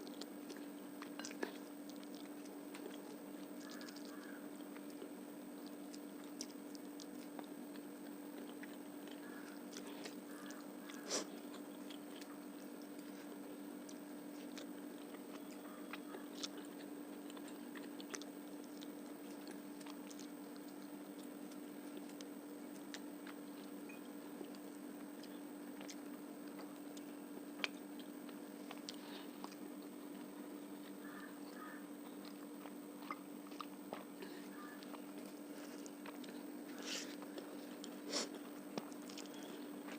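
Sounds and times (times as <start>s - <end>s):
wet clicks and crunches: 0.0s - 13.1s, 13.8s - 23.5s
person chewing food: 0.0s - 39.9s.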